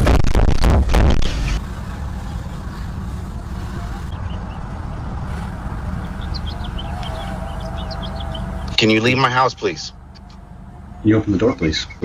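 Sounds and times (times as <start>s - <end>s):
low outdoor rumble: 0.0s - 12.0s
faint bird chirps: 6.0s - 8.9s.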